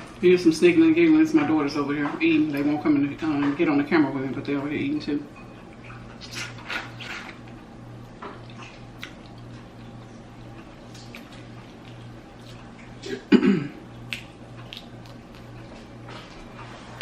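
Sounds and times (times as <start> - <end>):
steady low hum: 0.0 - 17.0
eating clicks and smacks: 7.3 - 13.0, 13.9 - 17.0.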